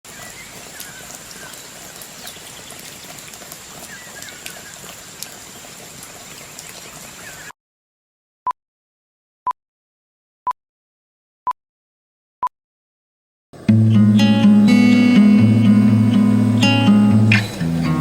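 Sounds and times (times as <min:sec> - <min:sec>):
water drips ticking: 0:00.1 - 0:07.2
light rain hiss: 0:00.1 - 0:07.5, 0:13.6 - 0:18.0.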